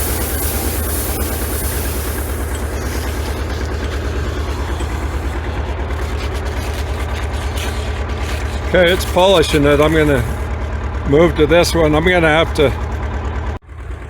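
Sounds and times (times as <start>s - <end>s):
polishing scrubbing hiss: 0.0s - 10.5s
tractor engine running under load: 0.0s - 14.0s.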